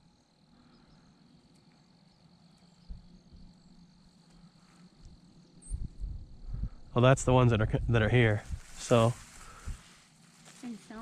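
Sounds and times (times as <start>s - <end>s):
high-pitched insect trill: 0.0s - 11.0s.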